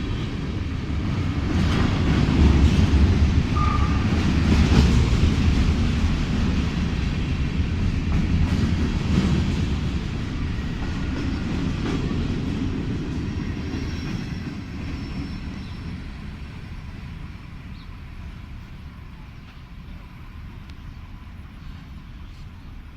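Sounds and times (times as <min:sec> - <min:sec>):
train wheels clattering: 0:00.0 - 0:16.1
freight train rumbling by: 0:00.0 - 0:22.9.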